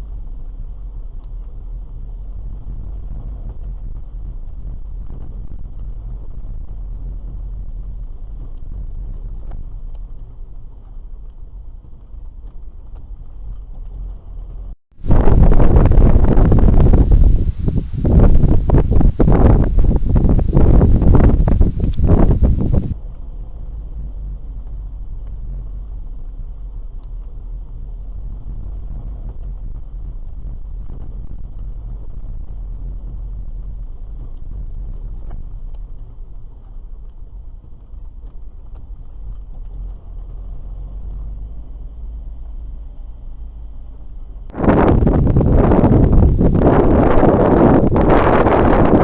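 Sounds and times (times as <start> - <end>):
faint ticks: 16.4 - 22.9.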